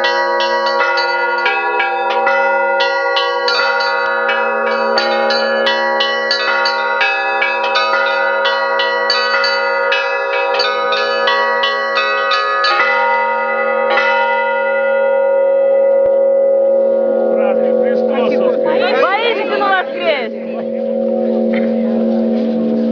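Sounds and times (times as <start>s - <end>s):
quick strikes on small bells: 0.0s - 14.4s
deep bells ringing: 0.0s - 22.9s.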